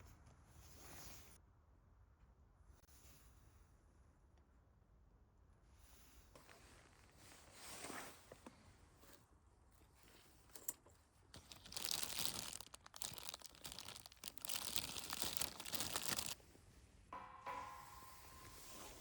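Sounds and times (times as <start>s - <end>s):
wrapping material crumpling and tearing: 11.3s - 16.4s.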